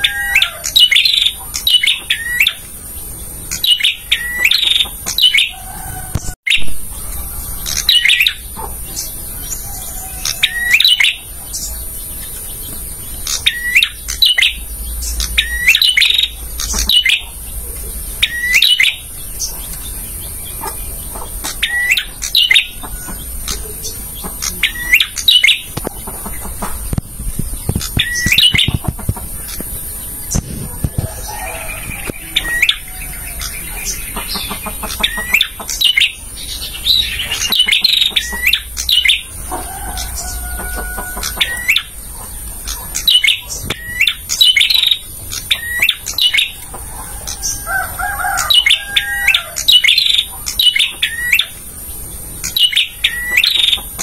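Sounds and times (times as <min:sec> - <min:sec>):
bird chattering: 0:06.9 - 0:54.0
bird calling sharp notes: 0:20.1 - 0:27.0.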